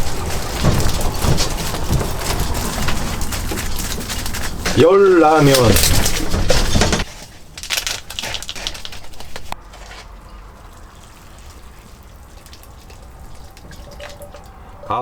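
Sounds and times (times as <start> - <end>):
water pouring into pot: 10.0 - 15.0.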